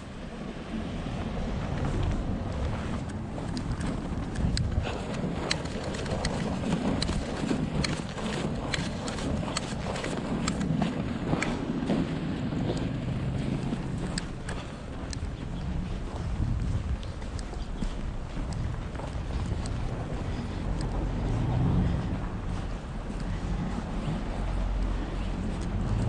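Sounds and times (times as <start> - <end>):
low street rumble: 0.0 - 26.0
wind buffeting microphone: 0.0 - 26.0
sharp clicks: 3.0 - 10.7.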